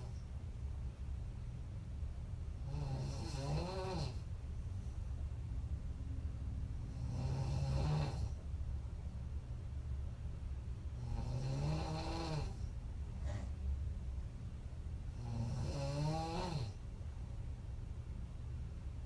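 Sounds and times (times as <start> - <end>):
steady low hum: 0.0 - 19.0
woman snoring: 2.6 - 4.2, 6.9 - 8.4, 11.0 - 12.6, 15.1 - 16.8.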